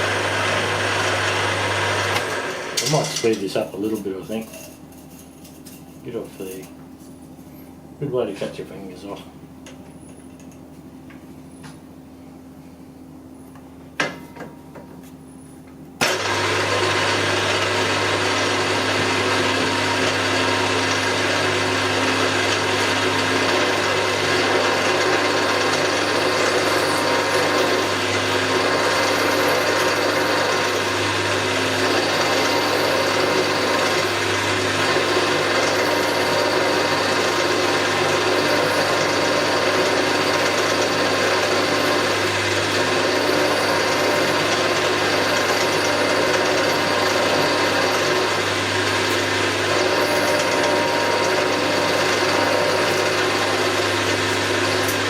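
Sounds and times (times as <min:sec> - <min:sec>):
milling machine motor humming: 0:00.0 - 0:03.6, 0:16.0 - 0:55.0.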